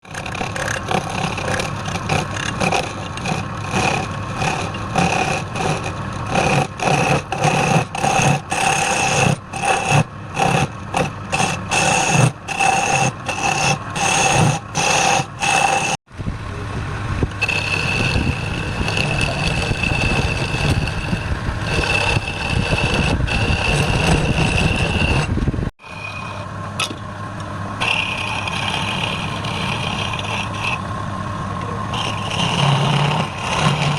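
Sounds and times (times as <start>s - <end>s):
turning tool scraping wood: 0.0s - 16.0s, 17.3s - 27.1s, 27.8s - 30.9s, 31.5s - 33.9s
wood lathe motor running: 0.0s - 33.9s.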